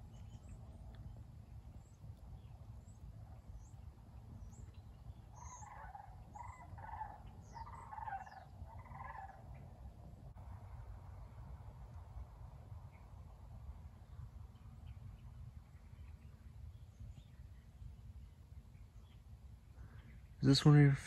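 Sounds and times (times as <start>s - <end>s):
harsh low bird calls: 0.0s - 10.2s
low steady rumble: 0.0s - 21.0s
high falling bird chirps: 3.5s - 9.7s.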